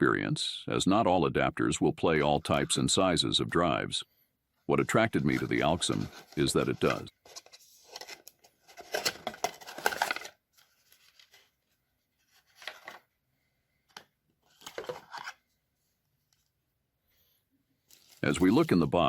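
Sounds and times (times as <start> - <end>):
packaging rustling and tearing: 5.3 - 11.6.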